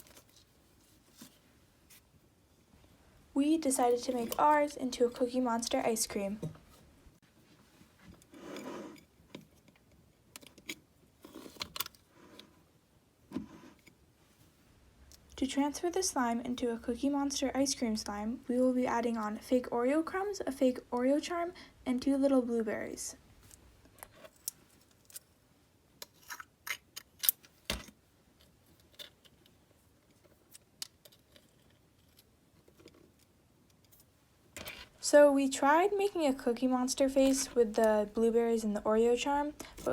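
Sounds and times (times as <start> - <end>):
soft rustle: 0.0 - 4.6, 6.2 - 9.7, 13.4 - 15.1.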